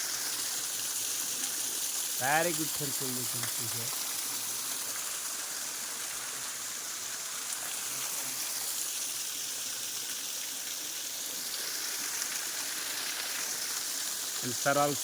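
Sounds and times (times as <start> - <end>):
waterfall splashing: 0.0 - 8.8.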